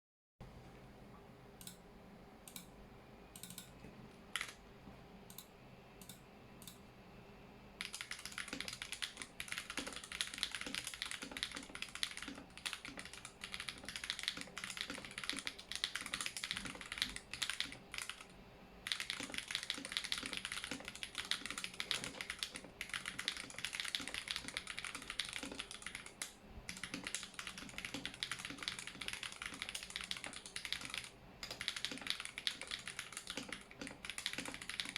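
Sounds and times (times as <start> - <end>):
typing on mechanical keyboard: 4.3 - 4.6, 7.8 - 34.9.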